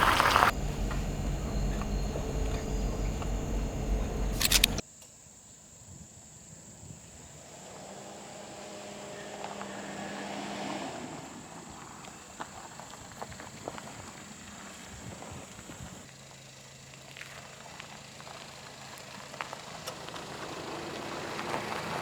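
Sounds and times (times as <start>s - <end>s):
car engine and road rumble: 0.0s - 4.8s, 14.2s - 22.0s
clicks: 0.0s - 4.8s.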